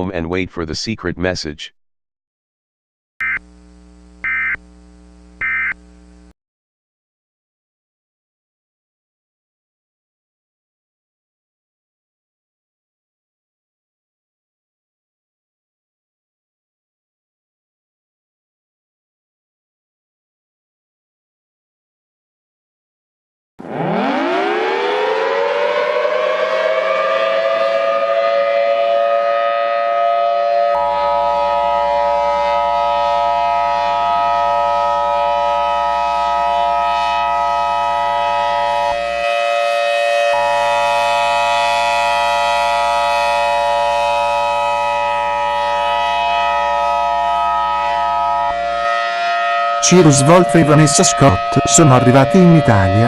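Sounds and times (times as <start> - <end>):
two-tone alert tone: 4.2 - 4.6, 5.4 - 5.8
civil defense siren wailing: 23.6 - 53.0.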